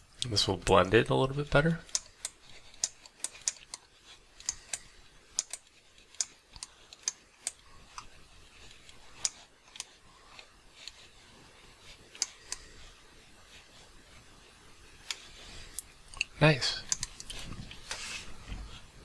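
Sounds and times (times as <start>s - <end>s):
computer mouse and keyboard clicks: 1.8s - 11.1s, 15.0s - 18.0s.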